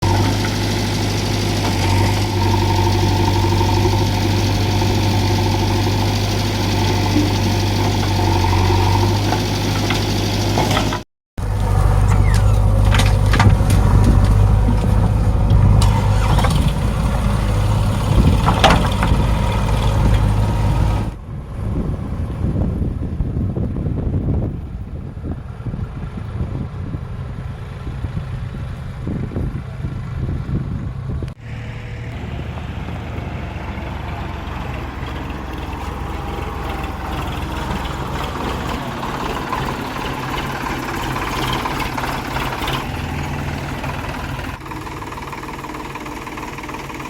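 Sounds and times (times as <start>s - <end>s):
diesel engine running: 0.0s - 47.0s
sharp knocks and clanks: 12.0s - 16.8s, 18.2s - 20.4s.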